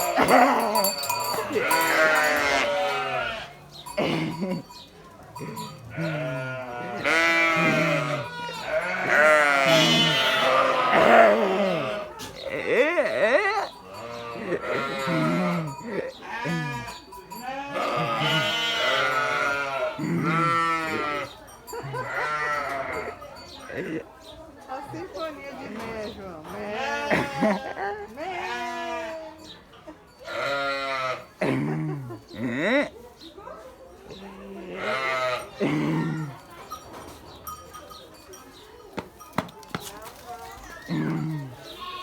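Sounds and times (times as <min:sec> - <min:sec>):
sheep bleating: 0:00.0 - 0:04.6, 0:05.4 - 0:23.2, 0:26.6 - 0:29.4, 0:30.2 - 0:31.6, 0:34.6 - 0:36.4, 0:40.9 - 0:42.0.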